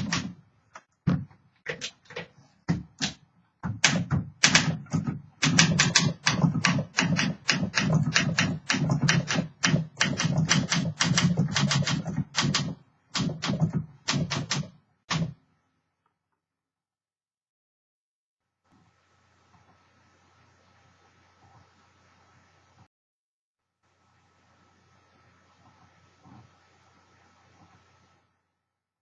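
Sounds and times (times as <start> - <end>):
manual typewriter typing: 0.0 - 0.4, 1.7 - 15.4.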